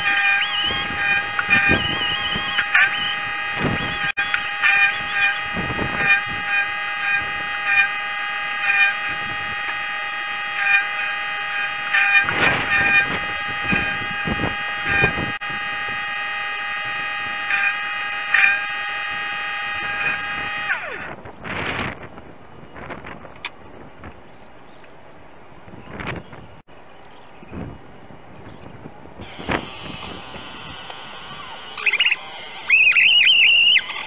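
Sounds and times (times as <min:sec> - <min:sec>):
small petrol engine running: 0:00.0 - 0:21.2, 0:29.2 - 0:34.0.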